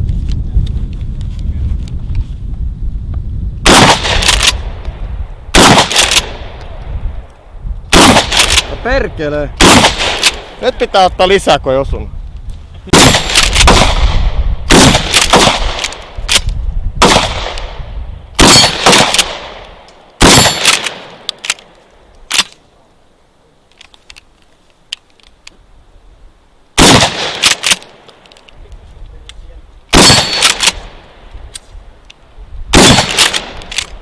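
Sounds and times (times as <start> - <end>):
shotgun shots: 3.6 - 4.8, 5.5 - 6.6, 7.9 - 10.6, 12.9 - 17.8, 18.4 - 21.6, 26.8 - 28.0, 29.9 - 31.0, 32.7 - 33.9.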